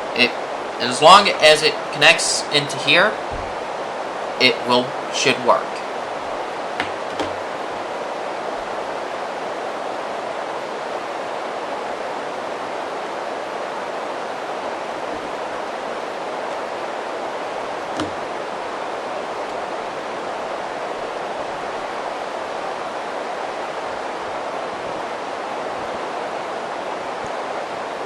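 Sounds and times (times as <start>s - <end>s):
microphone hiss: 0.0s - 28.0s.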